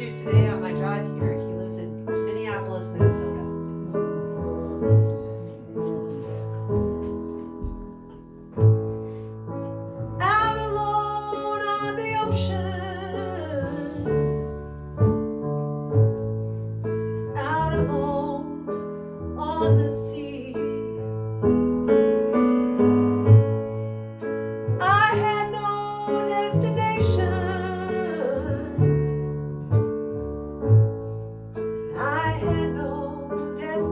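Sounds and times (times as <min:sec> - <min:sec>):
bass line: 0:00.0 - 0:18.6, 0:24.7 - 0:33.9
piano: 0:00.0 - 0:33.9
woman singing with vibrato: 0:10.2 - 0:14.2, 0:24.8 - 0:29.1.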